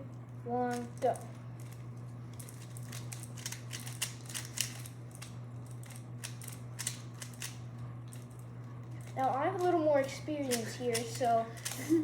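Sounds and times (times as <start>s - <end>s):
puzzle cube plastic clicks: 2.4s - 7.6s.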